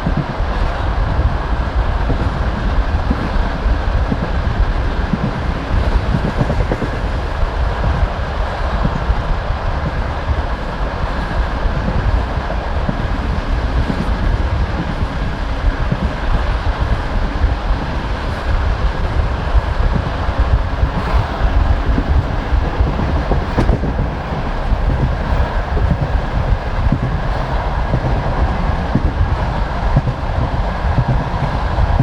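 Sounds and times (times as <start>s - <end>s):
train wheels rumbling on rails: 0.0s - 32.0s
wheels clattering over rail joints: 3.0s - 28.5s.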